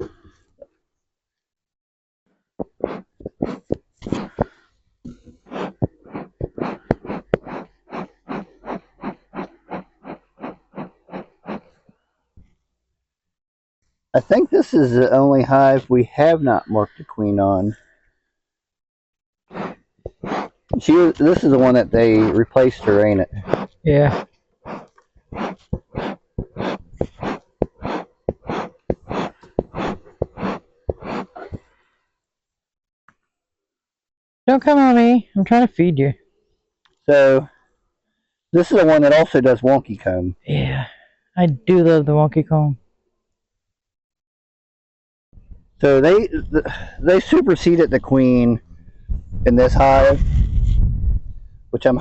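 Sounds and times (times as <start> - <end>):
bee smoker bellows puffing: 2.6 - 11.7, 19.5 - 31.6.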